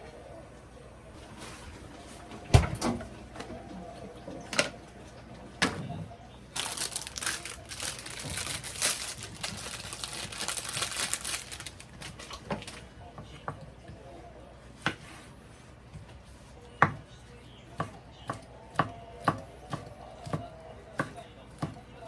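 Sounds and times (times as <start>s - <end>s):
rustling: 6.6s - 12.8s
knife chopping on cutting board: 16.8s - 17.0s, 17.8s - 21.8s.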